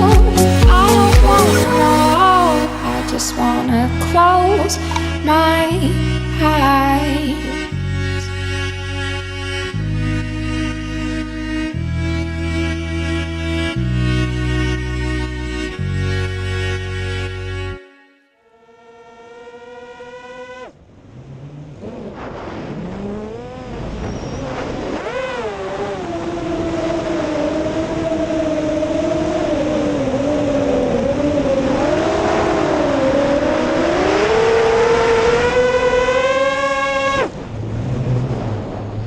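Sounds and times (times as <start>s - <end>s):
quadcopter motors whining: 18.5s - 37.4s.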